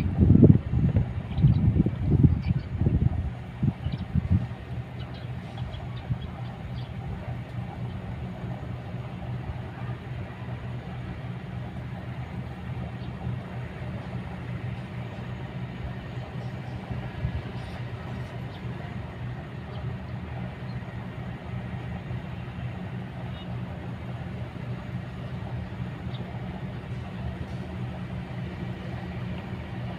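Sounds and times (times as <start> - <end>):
excavator diesel engine running: 0.0 - 29.9.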